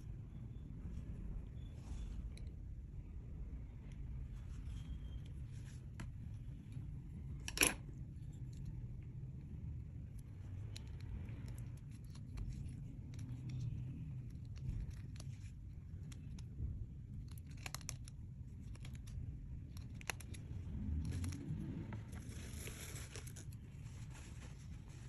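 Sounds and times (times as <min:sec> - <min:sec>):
sticky clicks and crackles: 0:10.0 - 0:23.8.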